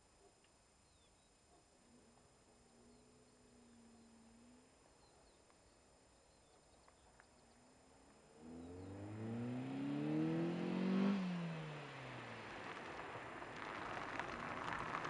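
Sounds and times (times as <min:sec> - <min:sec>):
car engine revving: 0:08.4 - 0:15.0.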